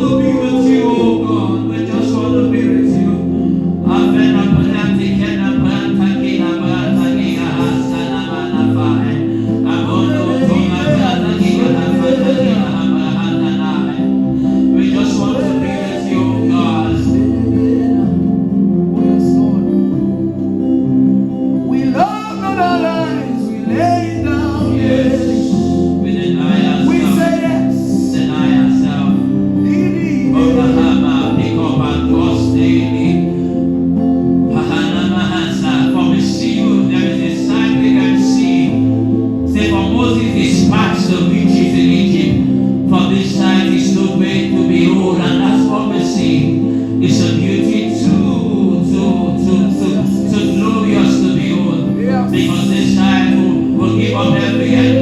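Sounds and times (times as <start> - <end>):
man singing: 0.0 - 19.9, 21.6 - 33.6, 34.5 - 55.0
bass line: 0.0 - 55.0
sustained chords: 0.0 - 55.0.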